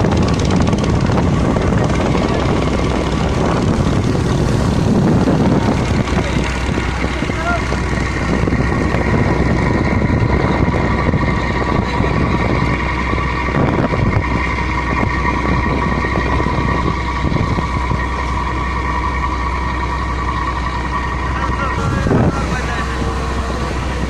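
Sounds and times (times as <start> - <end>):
ferry engine drone: 0.0 - 24.0.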